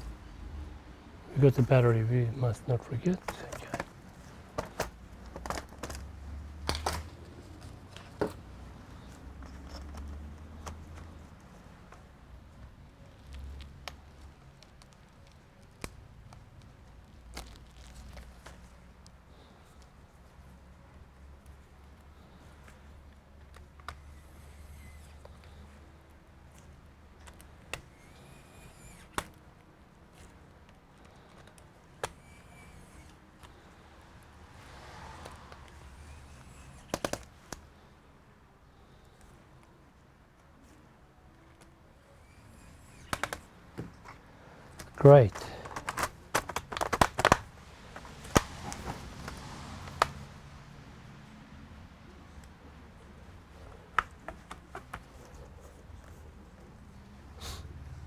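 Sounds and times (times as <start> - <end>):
low steady hum: 0.0 - 9.6
laptop parts clicking and knocking: 3.0 - 12.0, 26.5 - 29.4, 31.0 - 33.8, 35.2 - 37.7, 41.5 - 50.3, 53.5 - 56.2.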